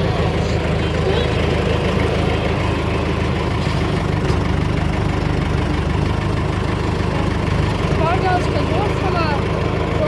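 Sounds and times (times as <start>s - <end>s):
diesel engine idling: 0.0s - 10.0s.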